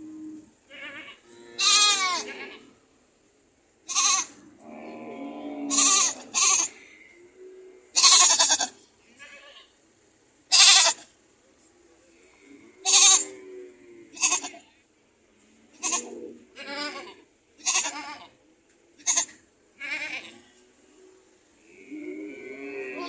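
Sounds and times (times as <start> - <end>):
goats bleating: 0.7 - 2.7, 3.9 - 6.8, 7.9 - 9.7, 10.5 - 11.1, 12.8 - 13.5, 14.1 - 14.7, 15.8 - 18.4, 19.0 - 20.6, 21.8 - 23.0.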